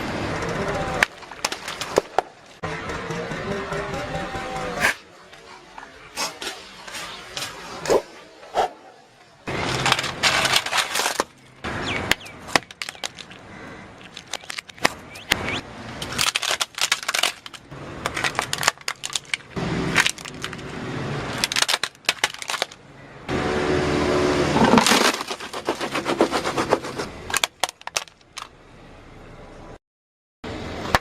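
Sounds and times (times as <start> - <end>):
brittle material crunching and snapping: 12.1 - 13.4, 14.0 - 15.4, 16.0 - 22.8, 24.6 - 28.5.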